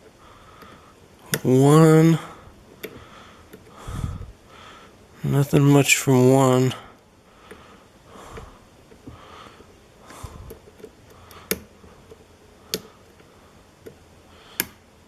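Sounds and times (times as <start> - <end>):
breathing through the nose: 2.3 - 5.0, 7.3 - 11.7
lock pick clicks: 10.4 - 12.9, 14.6 - 14.8.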